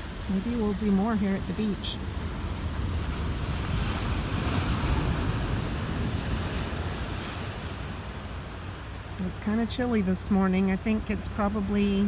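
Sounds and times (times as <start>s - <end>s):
wind buffeting microphone: 0.0s - 8.5s
ocean surf washing in: 0.0s - 12.0s.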